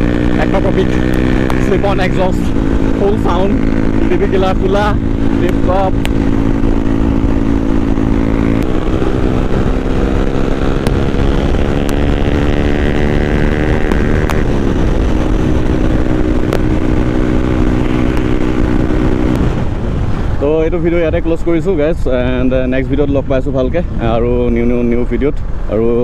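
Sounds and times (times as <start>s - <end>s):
motorcycle engine revving: 0.0s - 20.7s.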